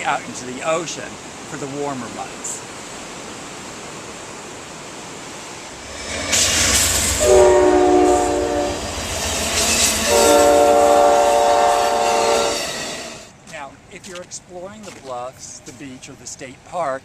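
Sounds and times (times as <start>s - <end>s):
train rumbling past: 5.6s - 14.0s
train air horn blasts: 5.8s - 13.3s.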